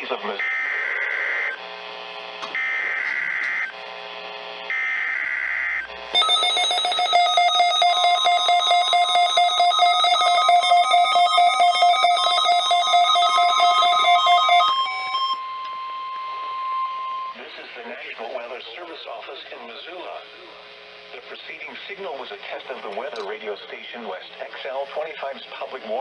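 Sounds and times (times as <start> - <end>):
pulsing warning alarm tone: 0.2 - 1.6, 2.5 - 3.8, 4.7 - 17.4
digital data bursts: 4.7 - 15.5.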